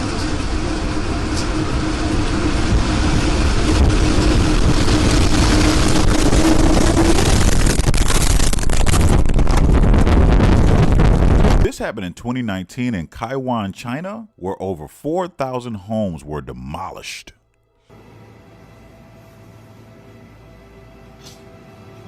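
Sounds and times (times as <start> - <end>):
tornado wind roaring: 0.0 - 11.8
steady hum: 0.0 - 12.0, 17.6 - 22.0
wind buffeting microphone: 0.1 - 11.7.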